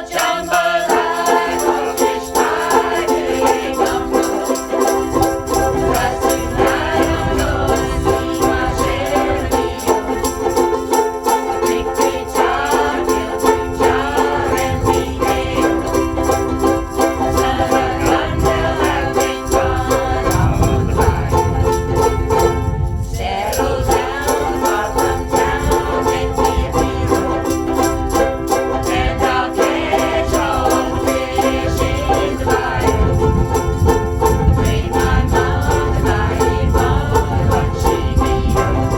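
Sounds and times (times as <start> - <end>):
group singing in unison: 0.0 - 22.4, 23.1 - 38.9
ukulele chords strumming: 0.0 - 38.9.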